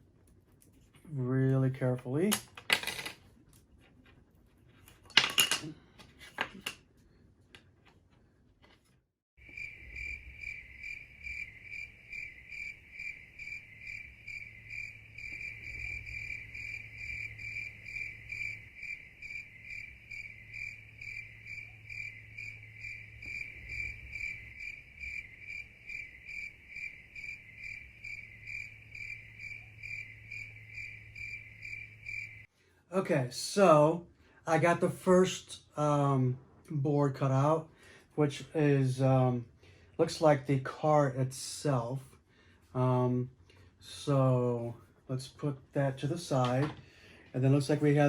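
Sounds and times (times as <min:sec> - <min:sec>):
cricket chirping: 0:09.4 - 0:32.5.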